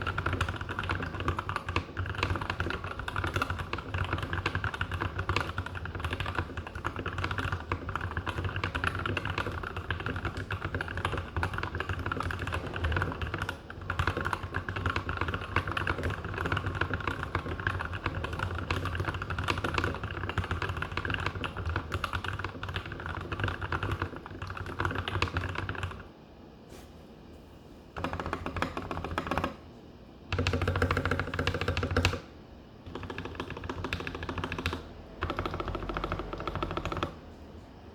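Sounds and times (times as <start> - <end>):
fast typing on mechanical keyboard: 0.0 - 26.1, 28.0 - 29.6, 30.3 - 32.3, 32.9 - 37.2.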